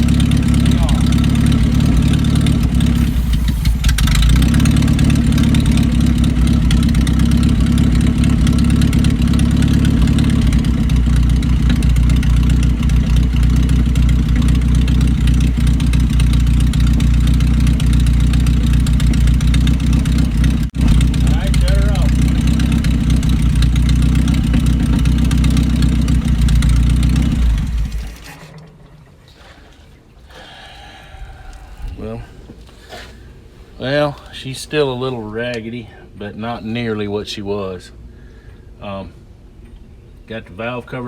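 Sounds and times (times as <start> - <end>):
car engine idling: 0.0 - 29.4.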